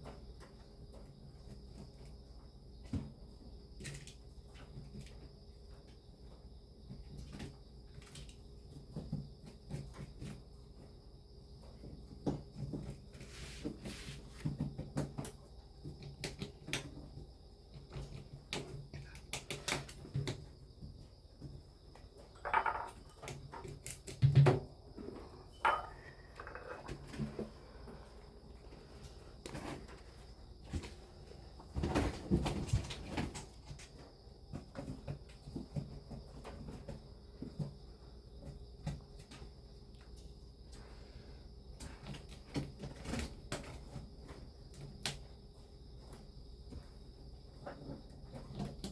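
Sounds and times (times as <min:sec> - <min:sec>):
faint steady hum: 0:00.0 - 0:48.9
small objects clicking and knocking: 0:22.2 - 0:24.6, 0:25.5 - 0:27.3.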